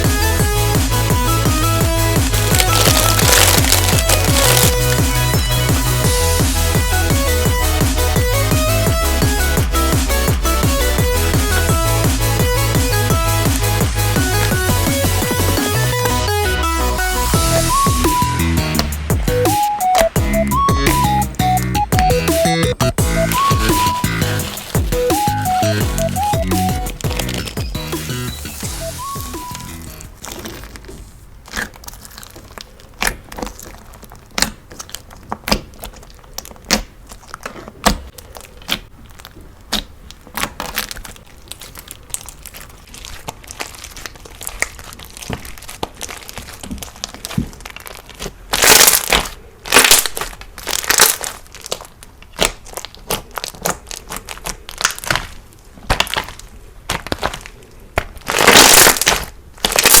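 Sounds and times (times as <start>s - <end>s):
crunchy slime crackling pops: 2.1s - 6.1s, 23.2s - 60.0s.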